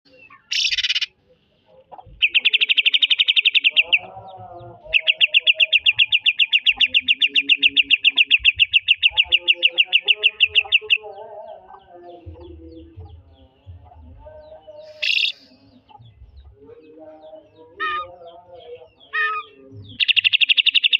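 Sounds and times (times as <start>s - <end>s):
faint lower bird calls: 0.1s - 1.2s, 14.6s - 16.0s, 17.4s - 20.9s
bird singing rapid staccato notes: 0.1s - 20.9s.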